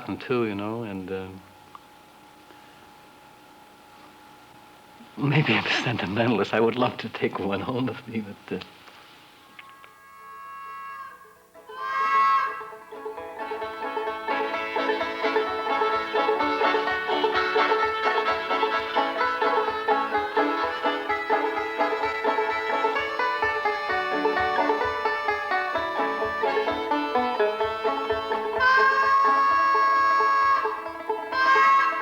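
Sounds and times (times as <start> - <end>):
loud wavering held note: 9.6 - 13.0
bluegrass banjo and fiddle music: 11.6 - 32.0.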